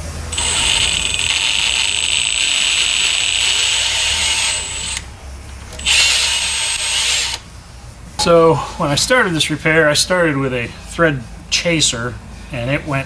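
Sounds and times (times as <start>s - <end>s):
power drill running: 0.0s - 7.6s.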